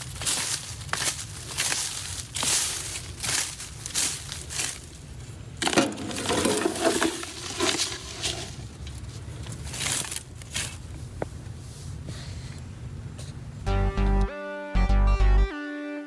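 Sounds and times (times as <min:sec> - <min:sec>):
dry plant debris rustling: 0:00.0 - 0:11.2.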